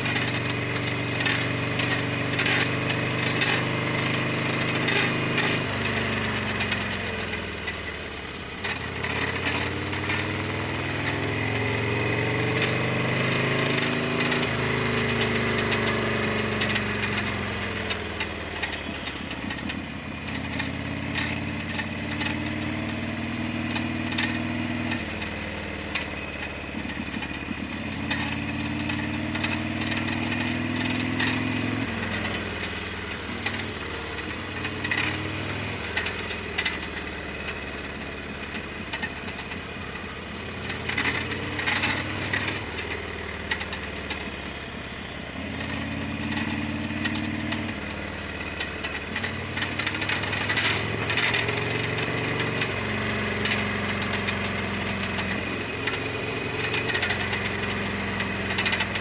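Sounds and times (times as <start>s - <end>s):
motorcycle engine accelerating: 0.0s - 59.0s.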